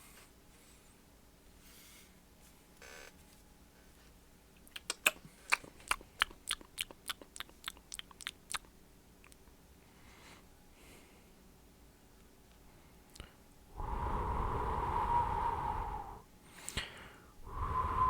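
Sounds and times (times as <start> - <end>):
wet mouth clicks: 4.6 - 9.4
short breath: 13.8 - 18.0.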